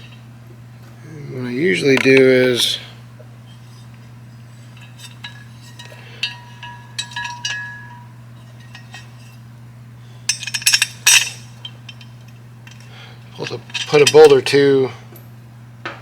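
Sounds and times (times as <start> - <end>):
steady low hum: 0.0 - 16.0
metal cover rattling: 4.7 - 9.3, 10.3 - 14.8
metal bolts clinking: 4.7 - 9.4, 10.3 - 14.8.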